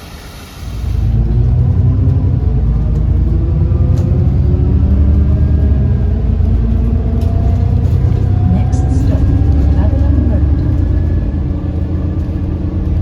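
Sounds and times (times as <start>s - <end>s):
bus diesel engine rumbling: 0.0s - 13.0s.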